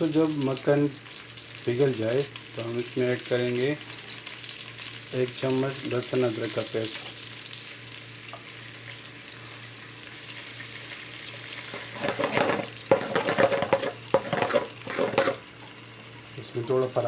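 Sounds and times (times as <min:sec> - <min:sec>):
paste sizzling in a pan: 0:00.0 - 0:17.0
scraping in a pan: 0:11.6 - 0:15.5.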